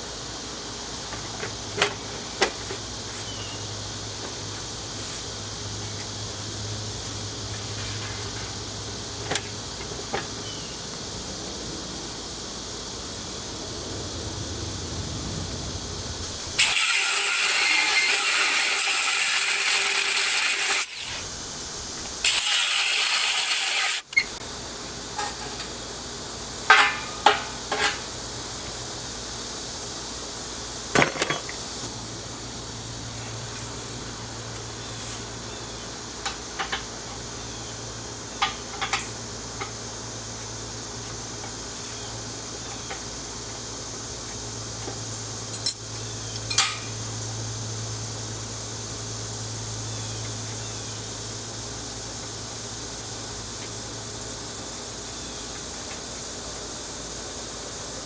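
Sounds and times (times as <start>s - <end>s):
steady low hum: 0.0s - 18.8s, 20.8s - 30.9s
loud hissing bursts: 10.4s - 24.6s.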